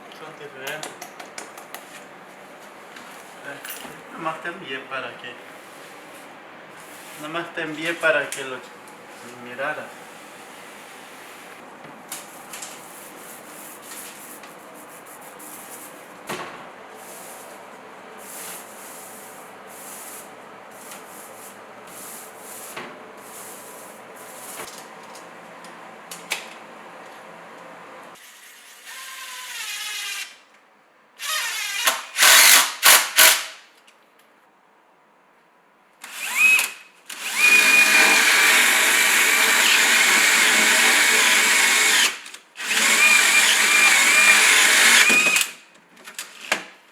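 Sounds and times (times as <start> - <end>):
power drill running: 28.3 - 30.3, 31.2 - 33.5, 36.0 - 45.6.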